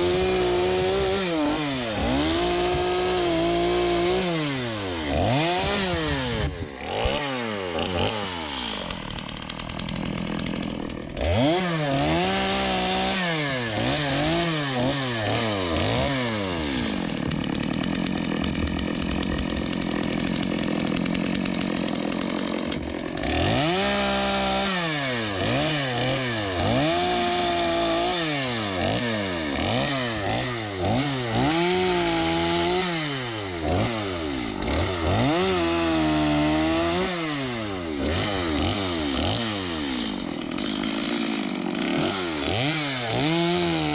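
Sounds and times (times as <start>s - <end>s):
chainsaw cutting wood: 0.0s - 43.9s
chainsaw revving: 0.0s - 43.9s.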